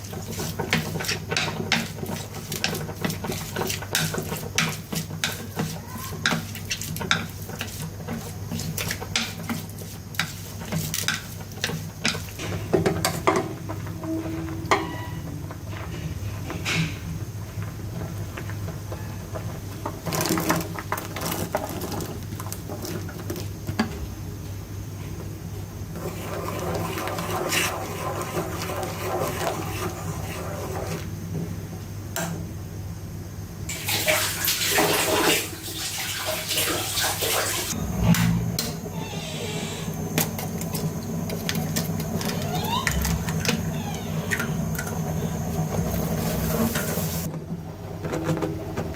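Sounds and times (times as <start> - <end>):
water running and splashing: 33.7 - 37.8.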